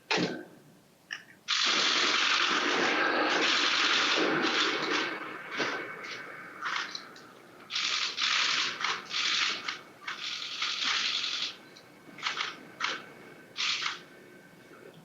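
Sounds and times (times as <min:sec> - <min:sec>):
camera shutters firing in bursts: 0:01.5 - 0:07.0, 0:07.7 - 0:11.6, 0:12.2 - 0:13.0, 0:13.6 - 0:14.1.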